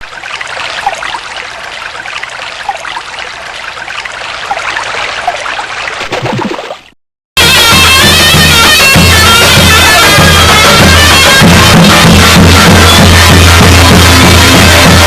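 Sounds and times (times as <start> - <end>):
flowing water: 0.0 - 15.0.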